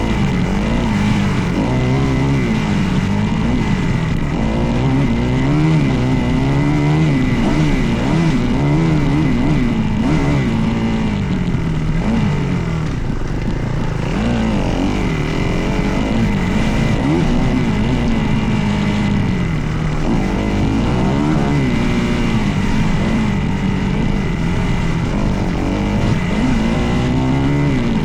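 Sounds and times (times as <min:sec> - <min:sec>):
dirt bike engine revving: 0:00.0 - 0:28.0.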